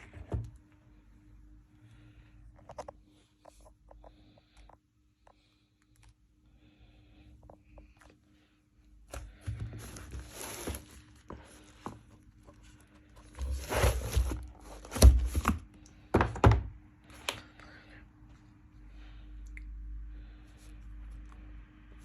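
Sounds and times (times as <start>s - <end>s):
packaging rustling and scraping: 9.2s - 15.6s.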